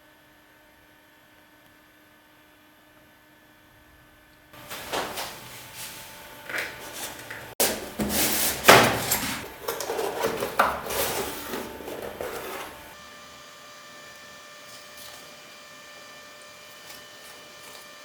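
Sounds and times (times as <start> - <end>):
cardboard packaging sliding and rubbing: 4.6 - 13.0.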